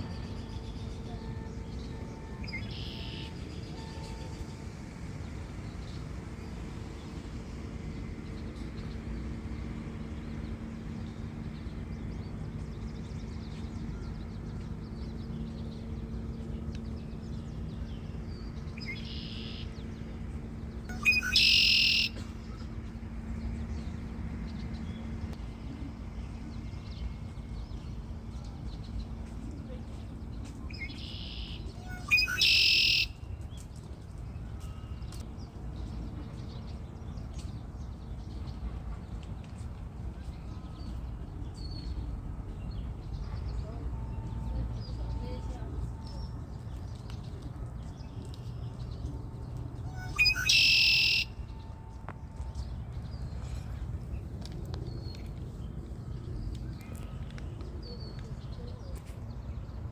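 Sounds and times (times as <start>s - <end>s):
low background rumble and hum: 0.0s - 59.9s
small bird chirping: 20.9s - 22.2s, 30.7s - 33.2s, 49.9s - 51.6s.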